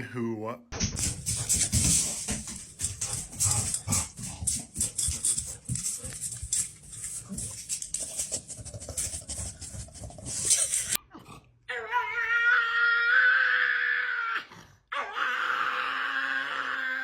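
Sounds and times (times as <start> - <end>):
dog making noisy sounds: 1.0 - 11.1.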